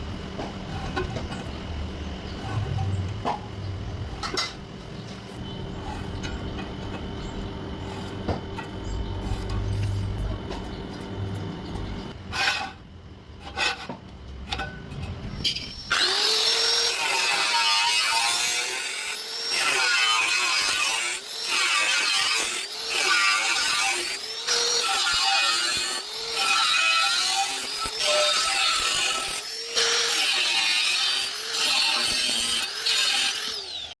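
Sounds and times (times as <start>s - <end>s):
power tool grinding metal: 15.4s - 34.0s.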